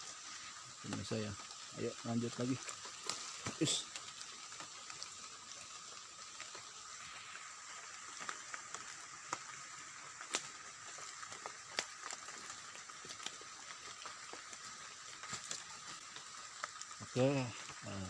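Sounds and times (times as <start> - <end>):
steady hiss: 0.0 - 18.0.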